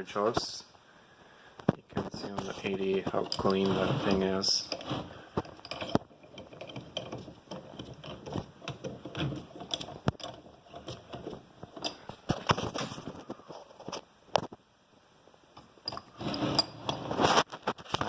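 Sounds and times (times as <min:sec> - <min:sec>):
metal vise rattling and scraping: 0:02.3 - 0:13.0, 0:15.9 - 0:17.4.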